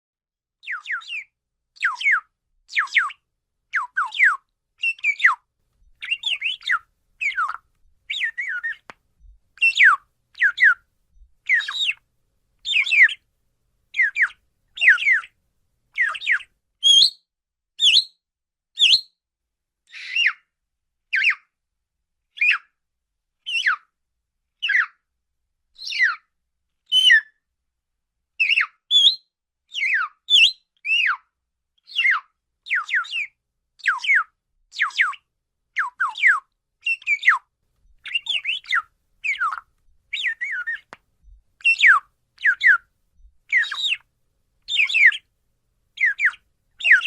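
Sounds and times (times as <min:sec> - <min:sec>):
parakeet whistled calls: 0:00.6 - 0:03.2, 0:03.8 - 0:05.4, 0:06.0 - 0:08.8, 0:09.6 - 0:10.8, 0:11.5 - 0:12.0, 0:12.6 - 0:13.2, 0:14.0 - 0:15.3, 0:16.0 - 0:18.2, 0:18.8 - 0:19.2, 0:19.9 - 0:20.4, 0:21.1 - 0:21.4, 0:22.4 - 0:22.6, 0:23.5 - 0:23.8, 0:24.6 - 0:24.9, 0:25.8 - 0:26.2, 0:26.9 - 0:27.3, 0:28.4 - 0:31.2, 0:31.9 - 0:35.2, 0:35.8 - 0:40.9, 0:41.6 - 0:42.9, 0:43.5 - 0:44.0, 0:44.7 - 0:45.2, 0:46.0 - 0:47.0.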